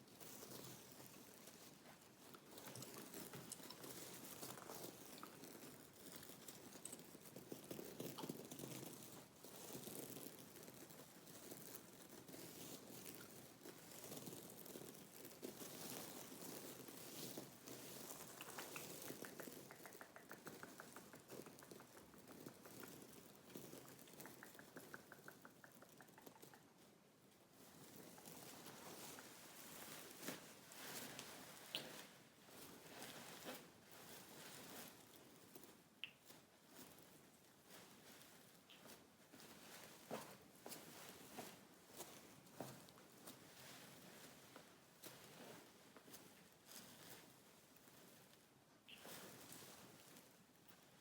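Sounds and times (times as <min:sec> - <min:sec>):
rapid fine ticks: 0:18.3 - 0:26.7.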